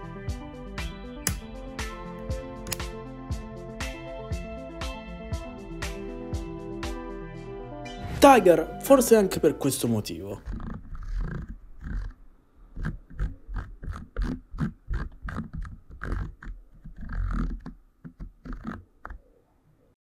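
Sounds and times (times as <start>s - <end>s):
mechanical keyboard key clacks: 2.7s - 2.9s.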